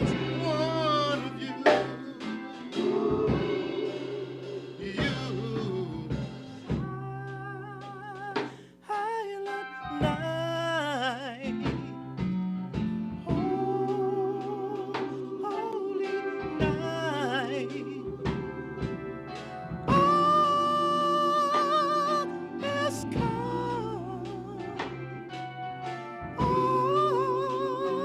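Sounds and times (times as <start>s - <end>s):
men's choir singing: 0.0s - 6.8s, 13.3s - 28.0s
low accompaniment: 0.0s - 8.0s, 12.8s - 28.0s
lead voice with wide vibrato: 0.0s - 10.3s, 13.3s - 28.0s.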